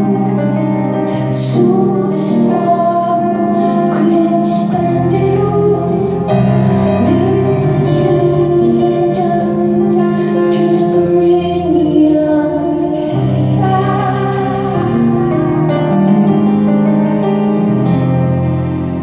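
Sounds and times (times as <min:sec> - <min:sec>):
sustained keyboard accompaniment: 0:00.0 - 0:19.0
woman singing: 0:01.0 - 0:15.4.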